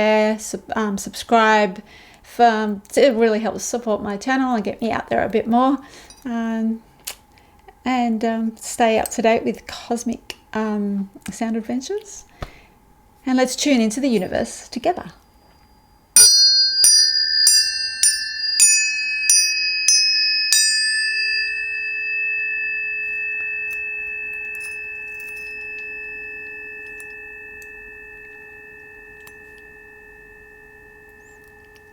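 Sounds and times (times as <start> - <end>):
tuning forks ringing: 15.5 - 31.9.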